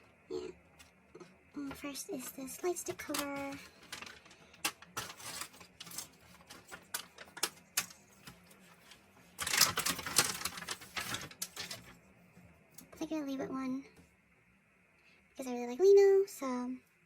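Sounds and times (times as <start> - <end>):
plastic packaging crinkling: 2.2 - 12.0.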